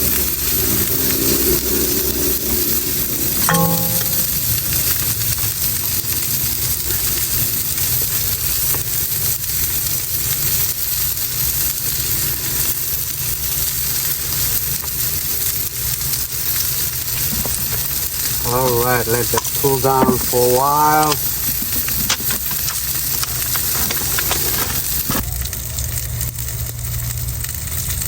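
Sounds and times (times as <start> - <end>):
fish sizzling in a pan: 0.0 - 28.0
small oil pops: 19.2 - 20.4, 21.1 - 25.2.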